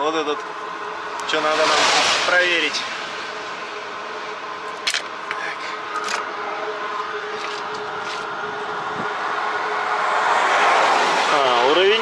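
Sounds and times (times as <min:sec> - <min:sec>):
steady hum: 0:00.0 - 0:10.6.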